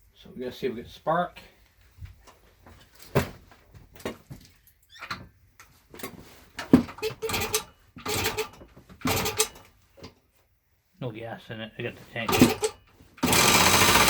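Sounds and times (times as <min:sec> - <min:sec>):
motorcycle engine kicked over: 0:12.3 - 0:14.0.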